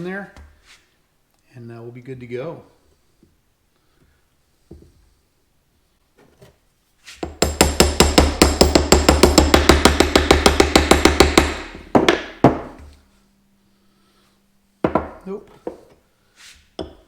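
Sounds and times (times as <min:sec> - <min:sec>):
heavier hammer blows: 0:07.3 - 0:12.9.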